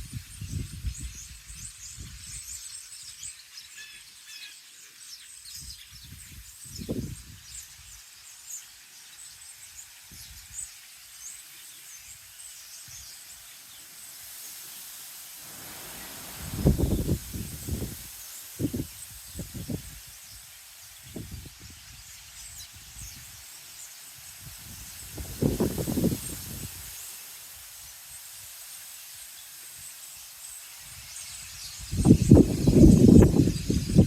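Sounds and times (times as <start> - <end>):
wind buffeting microphone: 0.0 - 2.4, 6.0 - 7.6, 15.6 - 20.1, 24.4 - 26.9, 31.8 - 34.0
steady hiss: 4.5 - 34.0.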